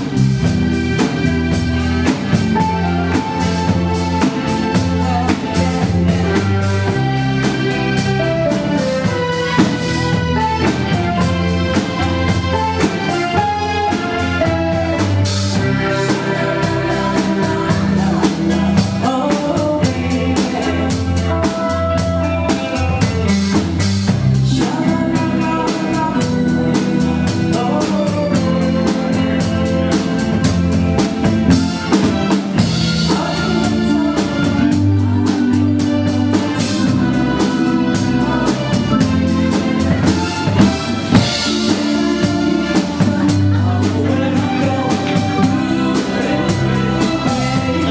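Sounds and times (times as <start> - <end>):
rock band playing: 0.0 - 47.9.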